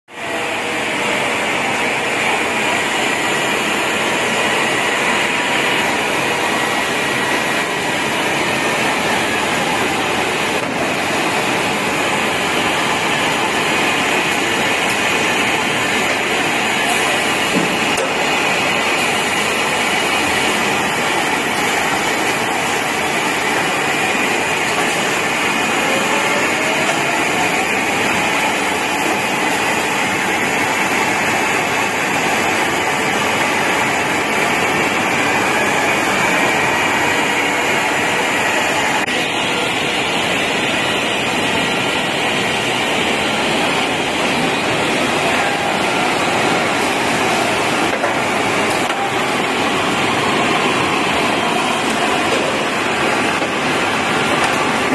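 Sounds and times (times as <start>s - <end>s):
machine running: 0.1s - 54.9s.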